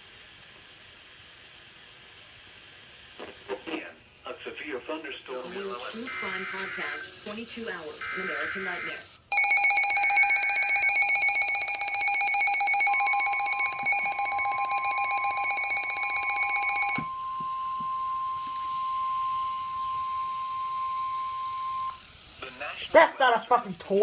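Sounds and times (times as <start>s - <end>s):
long steady warning beep: 6.0s - 7.4s, 8.0s - 22.0s
pulsing electronic alarm buzz: 6.0s - 22.0s.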